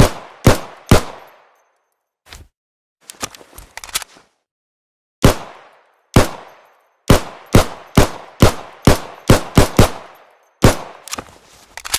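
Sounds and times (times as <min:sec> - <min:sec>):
pistol shots: 0:00.0 - 0:01.5, 0:05.2 - 0:11.1.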